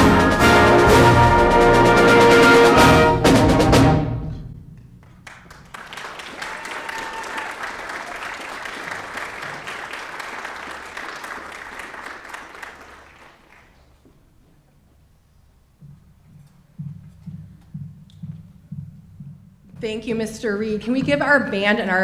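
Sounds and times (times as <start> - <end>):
audience applauding: 5.0 - 13.9.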